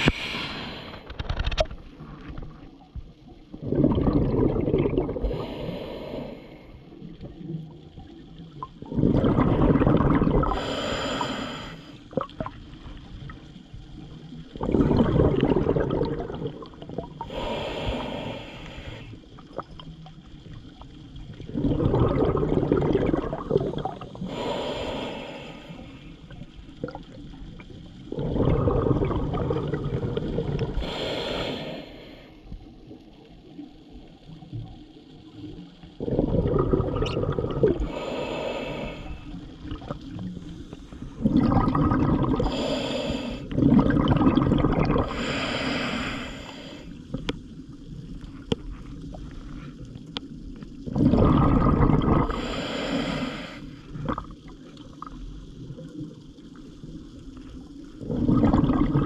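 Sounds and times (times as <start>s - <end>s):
regulator air hiss: 0.0s - 1.1s, 5.3s - 6.8s, 10.6s - 12.0s, 17.3s - 19.2s, 24.2s - 26.1s, 30.8s - 32.4s, 37.8s - 39.4s, 42.5s - 43.5s, 45.1s - 47.0s, 52.3s - 53.9s
exhaled bubbles gushing: 0.0s - 31.8s, 35.6s - 59.0s.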